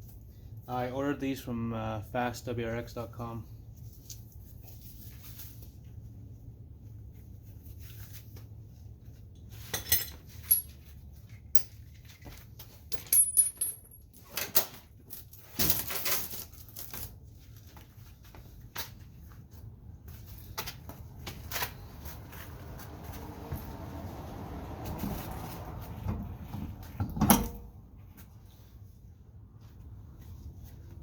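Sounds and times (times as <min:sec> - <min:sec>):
metallic clinks of wheel hardware: 0:09.6 - 0:10.9, 0:12.9 - 0:14.6, 0:27.1 - 0:27.7.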